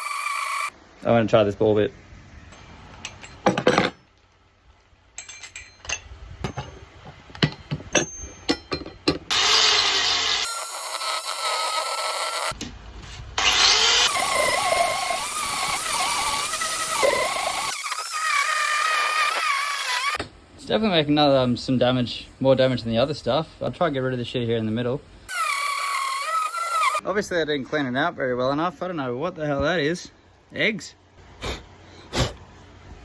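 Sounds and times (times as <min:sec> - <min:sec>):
grinder whining cutting wood: 0:00.0 - 0:00.7, 0:09.3 - 0:12.6, 0:13.4 - 0:20.2, 0:25.3 - 0:27.0.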